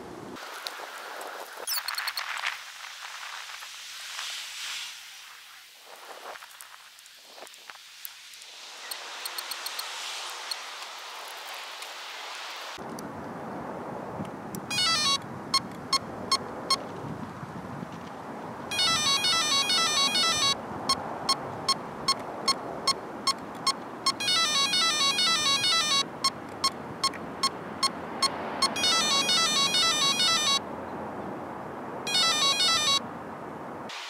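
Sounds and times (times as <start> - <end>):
steady hiss: 0.0 - 12.8
quick beeping tones: 14.7 - 15.2, 18.7 - 20.6, 23.6 - 26.1, 27.0 - 30.6, 32.1 - 33.0
regular ticks: 21.2 - 30.5
electronic music: 32.1 - 33.0.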